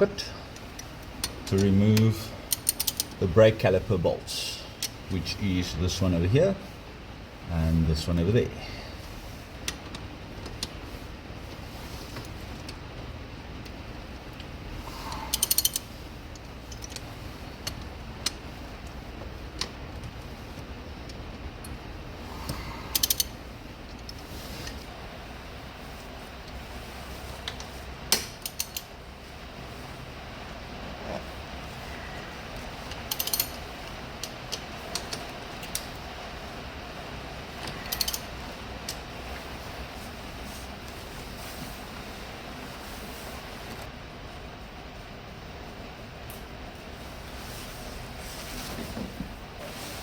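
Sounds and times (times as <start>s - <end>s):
socket ratchet clicking: 2.5s - 3.2s, 15.3s - 18.4s, 22.5s - 23.4s, 28.1s - 28.9s, 32.9s - 33.6s, 37.8s - 39.0s.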